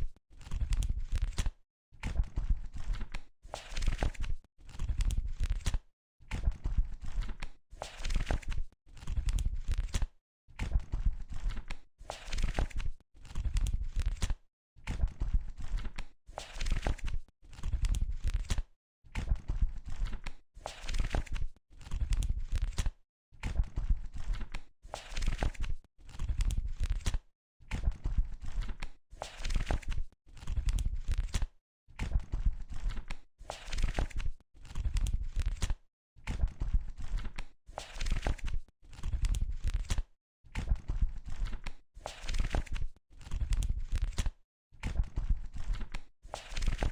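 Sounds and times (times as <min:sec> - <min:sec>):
book pages turning: 0:33.6 - 0:35.7, 0:37.8 - 0:40.0, 0:41.4 - 0:44.3, 0:45.6 - 0:46.9.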